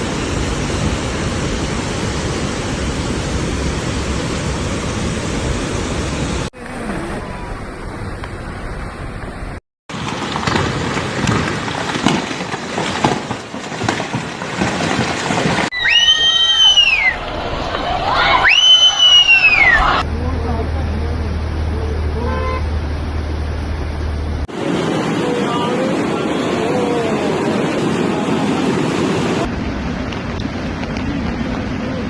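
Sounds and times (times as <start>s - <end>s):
knocks in rushing water: 9.9s - 16.0s
floodwater rushing: 9.9s - 20.0s, 24.5s - 32.0s.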